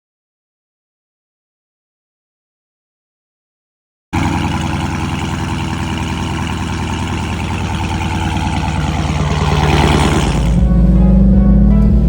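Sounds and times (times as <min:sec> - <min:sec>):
car engine idling: 0:04.2 - 0:12.0.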